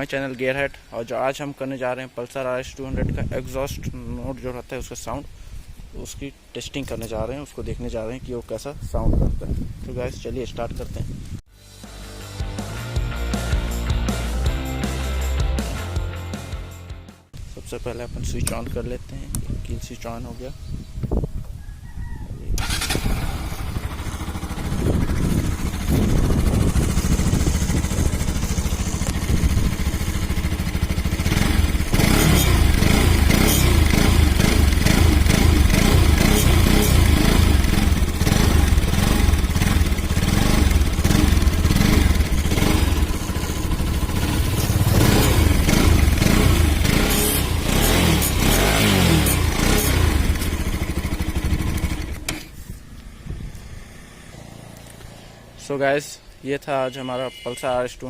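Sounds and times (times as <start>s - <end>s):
motorcycle engine revving: 22.6s - 55.6s.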